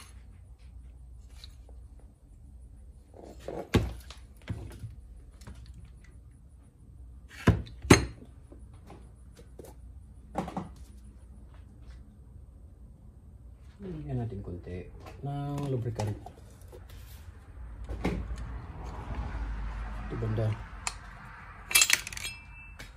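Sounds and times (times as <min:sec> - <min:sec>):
metal parts knocking: 0:21.7 - 0:22.5.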